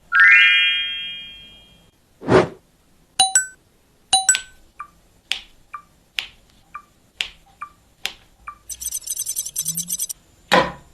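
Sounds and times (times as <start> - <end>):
brief ringing tone: 3.2 - 3.6, 8.7 - 10.1
short electronic beeps: 3.2 - 3.6, 4.2 - 4.6, 8.6 - 10.2
sharp clicks: 8.6 - 10.2.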